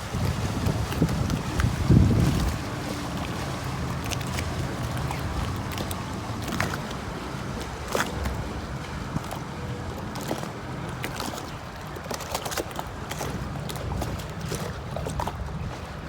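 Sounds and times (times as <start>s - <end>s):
wind rumble on microphone: 0.0s - 12.2s, 12.9s - 16.0s
water lapping and splashing: 0.0s - 16.0s.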